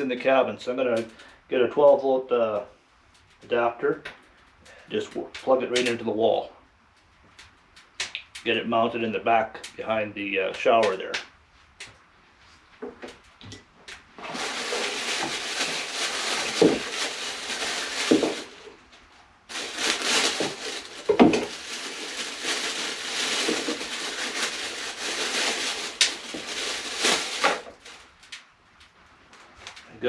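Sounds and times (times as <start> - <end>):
items being set down: 14.2 - 18.7, 19.5 - 27.9
packaging rustling: 14.2 - 18.8, 19.5 - 28.2.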